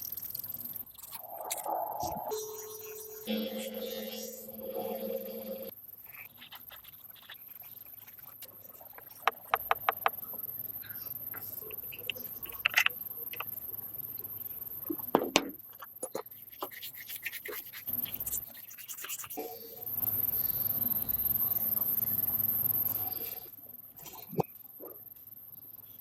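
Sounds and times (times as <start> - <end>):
sharp clicks and knocks: 9.0 - 10.4.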